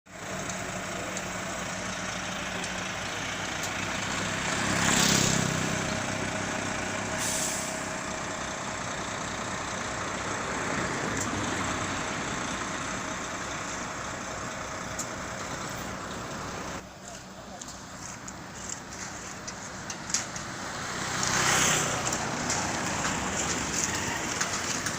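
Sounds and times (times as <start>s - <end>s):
concrete mixer truck running: 0.1s - 24.9s
loud hiss bursts: 7.1s - 8.0s.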